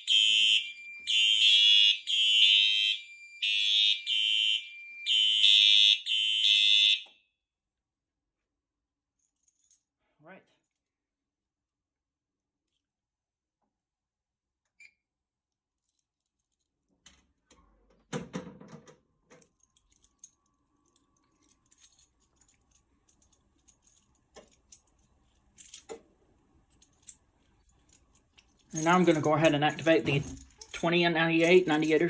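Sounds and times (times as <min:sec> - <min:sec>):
keys jangling: 0:19.3 - 0:32.0.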